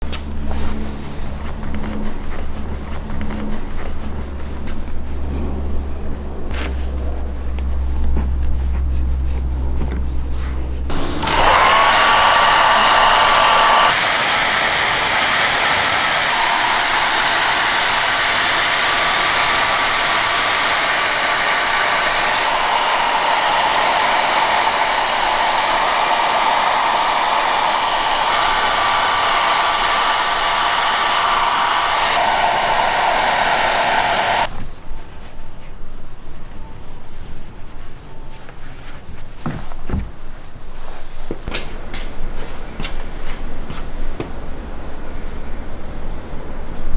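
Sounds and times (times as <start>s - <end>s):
hair dryer whining: 10.9s - 34.5s.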